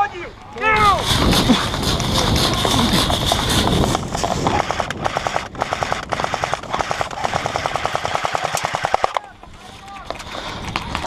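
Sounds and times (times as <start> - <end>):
airsoft gun firing bursts: 1.0 - 9.2.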